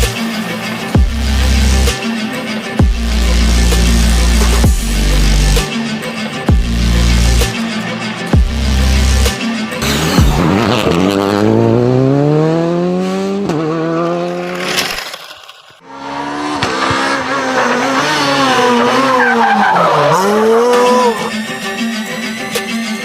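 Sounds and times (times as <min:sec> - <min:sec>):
racing car engine revving: 0:09.8 - 0:14.9, 0:15.8 - 0:21.4.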